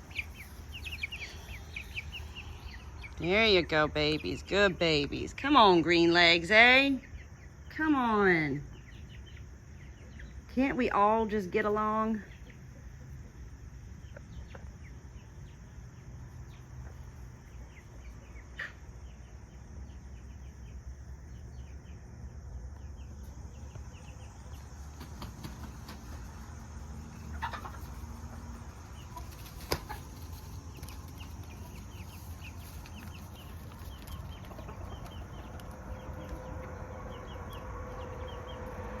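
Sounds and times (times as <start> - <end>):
chickens clucking softly: 12.2 - 19.2, 22.8 - 39.0.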